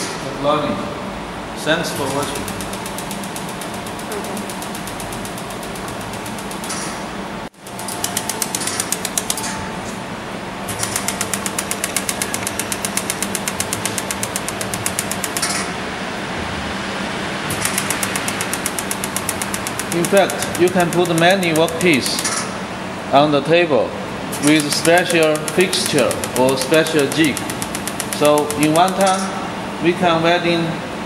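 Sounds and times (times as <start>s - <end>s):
steady machine hum: 0.0s - 31.0s
laser welder ticking pulses: 2.0s - 9.6s, 10.7s - 15.7s, 17.5s - 22.6s, 24.3s - 29.4s.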